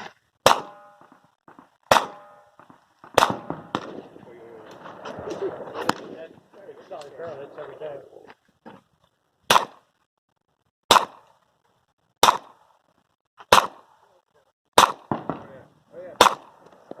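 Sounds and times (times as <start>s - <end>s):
revolver shots ringing: 1.9s - 4.2s.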